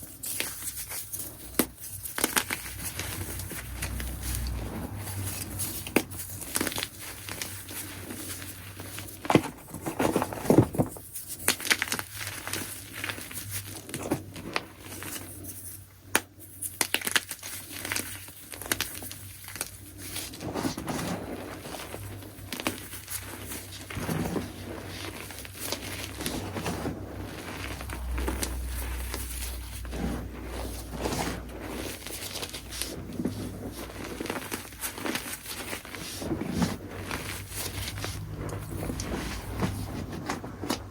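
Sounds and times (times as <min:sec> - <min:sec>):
chalk being crushed: 0:16.8 - 0:40.9.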